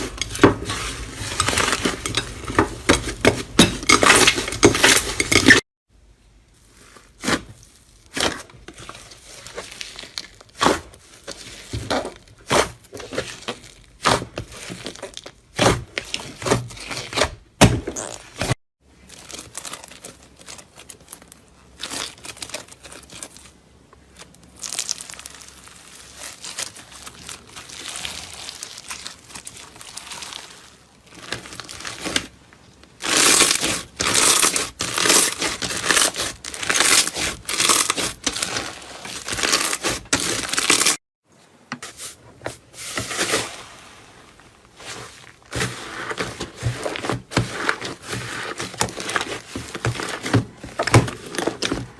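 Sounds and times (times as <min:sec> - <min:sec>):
slime crackling and popping: 0:19.1 - 0:32.4, 0:33.0 - 0:41.0.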